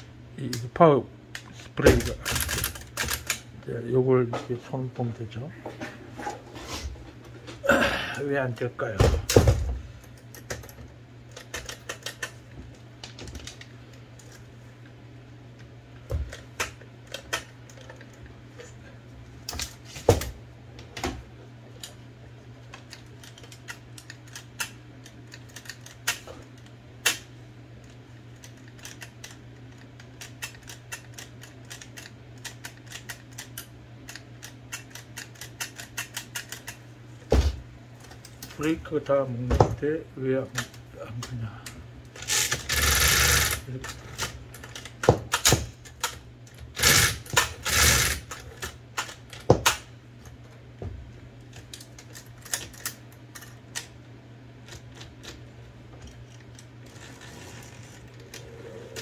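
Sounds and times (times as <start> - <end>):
typewriter motor humming: 42.2 - 49.8.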